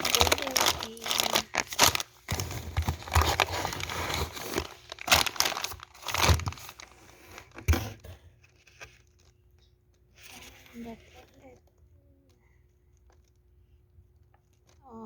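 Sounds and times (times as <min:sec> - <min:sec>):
plastic packaging crinkling: 0:00.0 - 0:07.7.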